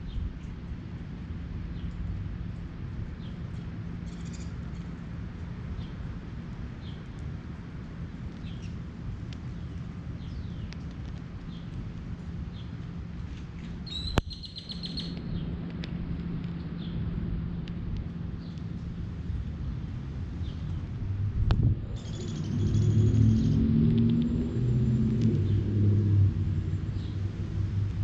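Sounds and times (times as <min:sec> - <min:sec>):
low background rumble: 0:00.0 - 0:28.0
rapid bird trill: 0:13.8 - 0:15.2, 0:22.0 - 0:23.5
birds chirping: 0:13.8 - 0:15.5, 0:21.9 - 0:23.7.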